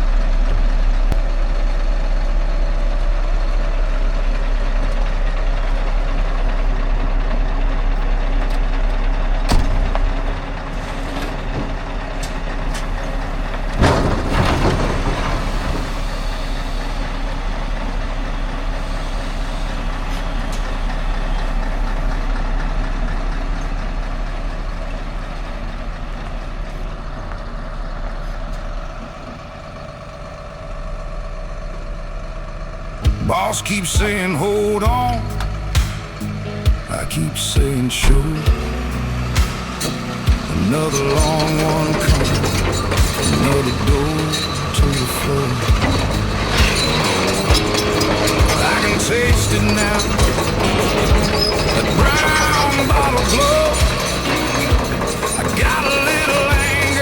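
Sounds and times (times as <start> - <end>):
diesel truck engine rumbling: 0.0 - 57.0
air brake hissing: 18.5 - 21.4.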